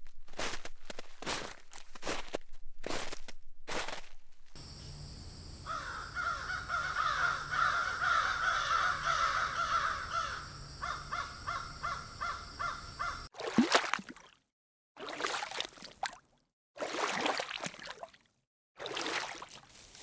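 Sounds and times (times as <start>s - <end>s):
crows cawing: 5.6s - 13.3s.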